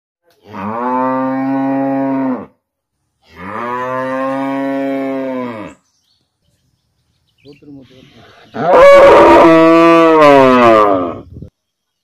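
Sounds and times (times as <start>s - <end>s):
cow mooing: 0.4s - 2.5s, 3.3s - 5.8s, 8.6s - 11.3s.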